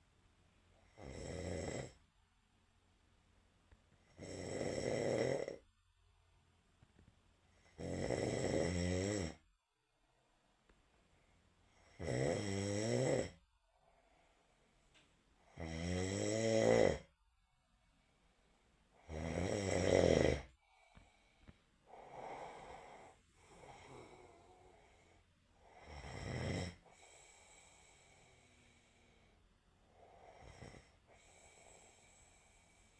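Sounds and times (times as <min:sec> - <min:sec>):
loud snoring: 0:00.8 - 0:02.0, 0:04.0 - 0:05.6, 0:07.6 - 0:09.4, 0:11.8 - 0:13.4, 0:15.4 - 0:17.1, 0:19.0 - 0:20.5, 0:21.9 - 0:28.8, 0:29.9 - 0:32.9
soft breaths: 0:09.9 - 0:12.0, 0:13.6 - 0:15.5, 0:17.4 - 0:19.1, 0:20.4 - 0:26.1, 0:26.7 - 0:32.9.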